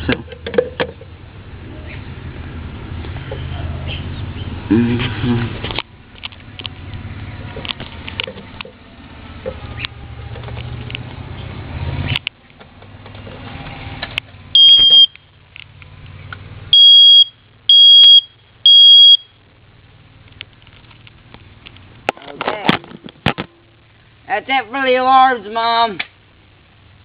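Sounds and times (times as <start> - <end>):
smoke alarm beeping: 14.6 - 15.2, 16.7 - 19.4.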